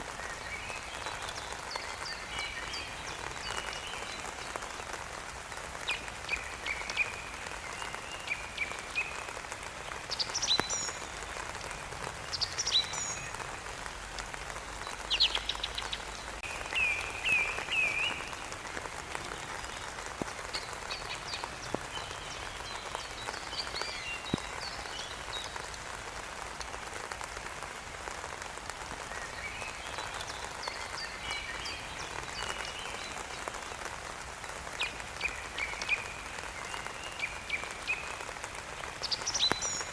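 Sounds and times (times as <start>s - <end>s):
steady rain: 0.0s - 39.9s
birds chirping: 5.9s - 25.7s.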